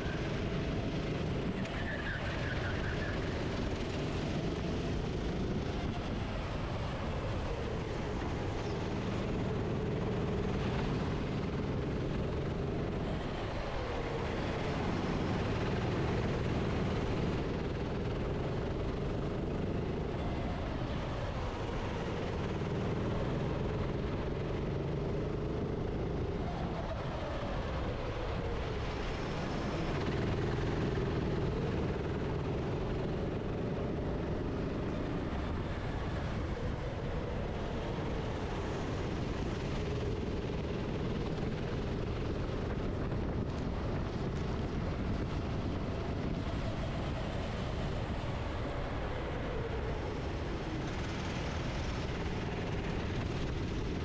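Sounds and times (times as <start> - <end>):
racing kart engine: 0.0 - 54.0.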